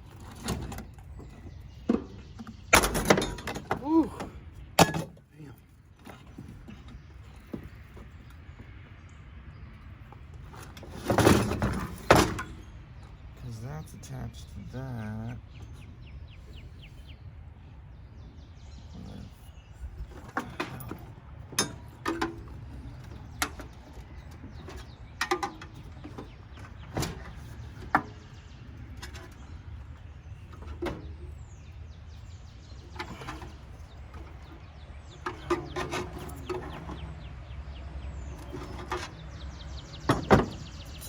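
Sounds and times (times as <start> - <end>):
metal clinks and knocks: 0.0 - 4.0, 4.8 - 5.3, 10.4 - 12.7, 20.0 - 29.8, 32.8 - 37.0.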